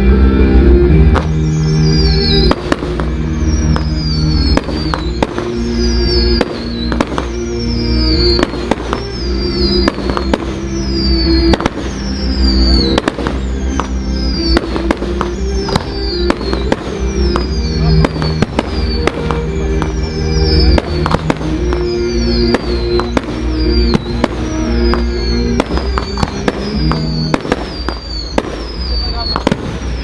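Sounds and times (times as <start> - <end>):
falling high tone: 0.0 - 30.0
loud music: 0.0 - 30.0
firework shells bursting: 8.2 - 30.0.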